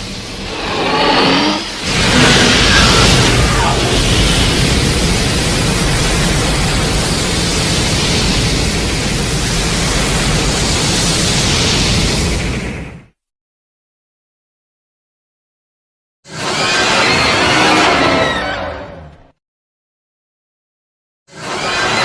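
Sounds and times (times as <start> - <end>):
steady rushing hiss: 0.0 - 13.0.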